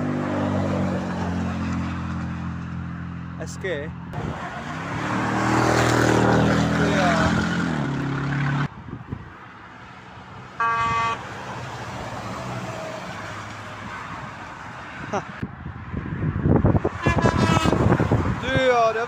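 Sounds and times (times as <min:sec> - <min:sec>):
tyre and road noise: 0:00.0 - 0:19.0
passing vehicle multi-tone horn: 0:10.5 - 0:11.6, 0:16.8 - 0:18.3
short horn beep: 0:10.6 - 0:11.2, 0:17.0 - 0:17.8.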